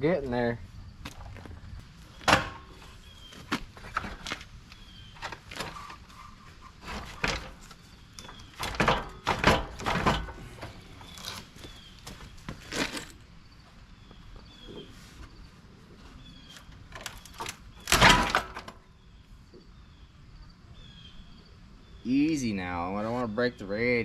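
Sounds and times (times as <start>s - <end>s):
knocks and clunks of car parts: 2.1s - 4.4s, 6.8s - 11.2s.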